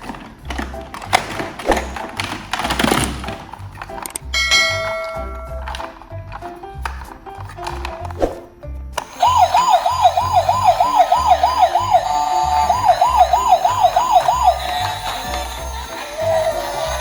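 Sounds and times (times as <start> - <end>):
background music with steady beat: 0.0 - 17.0
fast wailing siren: 9.2 - 17.0.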